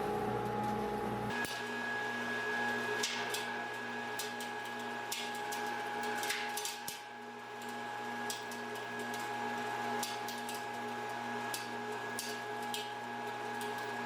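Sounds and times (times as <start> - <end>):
dust collector motor whine: 0.0 - 5.1.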